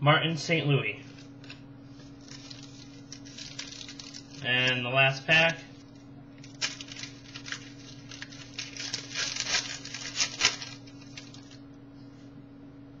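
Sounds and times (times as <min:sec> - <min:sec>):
faint steady hum: 0:00.0 - 0:13.0
wrapper tearing and crinkling: 0:02.2 - 0:04.5, 0:06.4 - 0:11.6.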